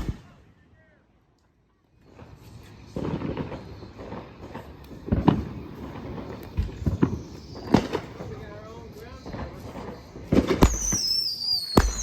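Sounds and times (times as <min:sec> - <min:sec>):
fireworks crackling pops: 0:00.0 - 0:00.4, 0:01.4 - 0:12.0
fireworks sharp bangs: 0:00.0 - 0:00.6, 0:02.1 - 0:08.6, 0:09.2 - 0:12.0.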